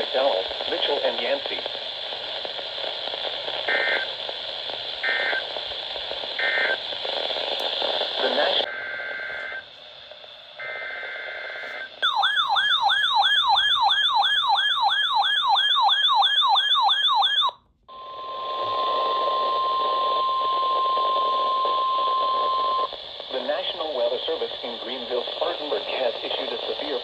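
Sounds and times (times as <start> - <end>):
sweeping alarm tone: 11.8 - 18.3.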